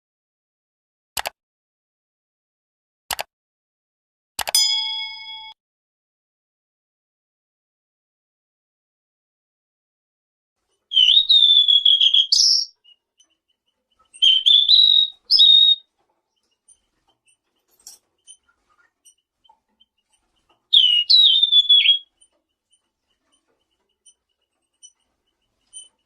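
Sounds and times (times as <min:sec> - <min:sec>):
songbird whistling phrases: 0:10.9 - 0:13.0, 0:14.2 - 0:15.9, 0:20.7 - 0:22.1.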